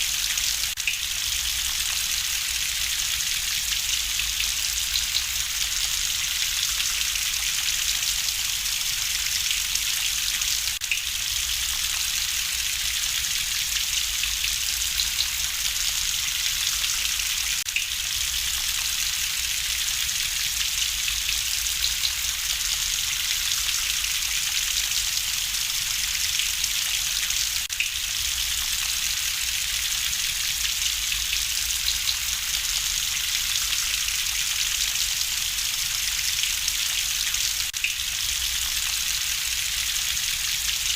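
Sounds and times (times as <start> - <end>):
rain hissing: 0.6 - 9.9
wood fire crackling: 4.0 - 7.8.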